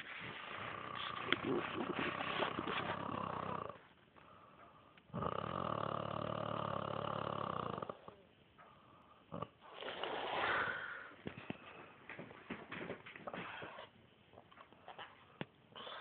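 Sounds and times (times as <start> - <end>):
loud buzzy snore: 0.3 - 3.8, 5.1 - 8.2
breathy whistly snore: 0.6 - 3.8, 5.2 - 8.2.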